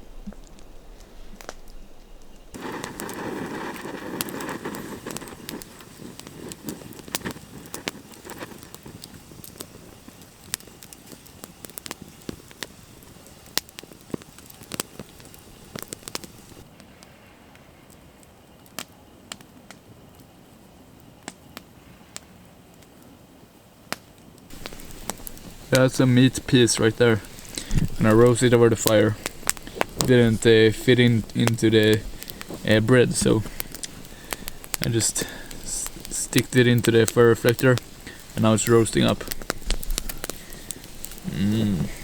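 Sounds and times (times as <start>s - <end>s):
campfire crackling and popping: 0.0s - 42.0s
hiss: 2.5s - 17.3s, 24.5s - 42.0s.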